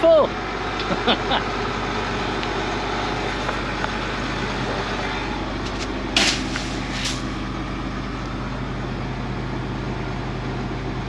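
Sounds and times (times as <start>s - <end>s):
combine engine idling: 0.0s - 11.0s.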